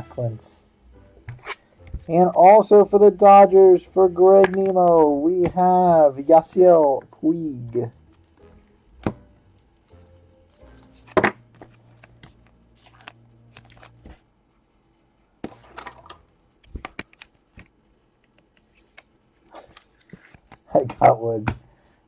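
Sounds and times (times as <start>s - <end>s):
faint background music: 0.0s - 22.0s
trading cards clicking and rustling: 4.3s - 14.2s, 15.6s - 17.7s, 18.3s - 21.5s.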